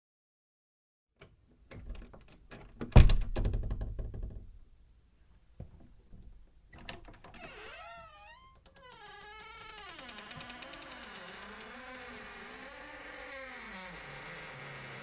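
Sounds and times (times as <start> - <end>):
door latch clicking and rattling: 1.7 - 4.4
loud heavy door thump: 2.9 - 4.4.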